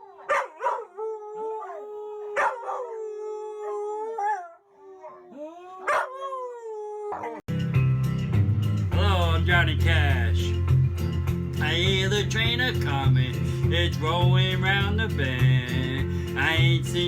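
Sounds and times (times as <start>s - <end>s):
dog howling: 0.0s - 7.5s
dog yipping: 0.2s - 0.9s, 2.4s - 2.9s, 5.8s - 6.3s.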